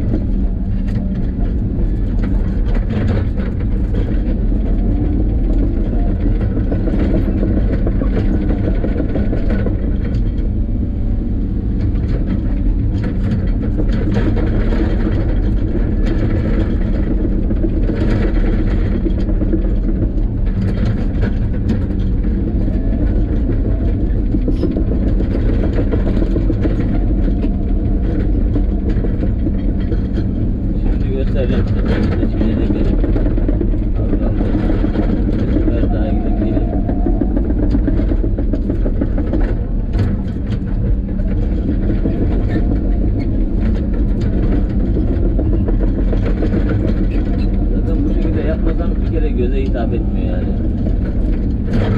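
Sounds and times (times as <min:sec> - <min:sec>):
vehicle engine rumbling: 0:00.0 - 0:51.9.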